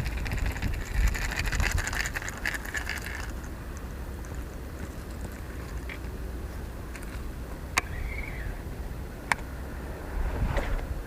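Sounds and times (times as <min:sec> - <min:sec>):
wind on microphone: 0:00.0 - 0:02.5, 0:09.5 - 0:11.0.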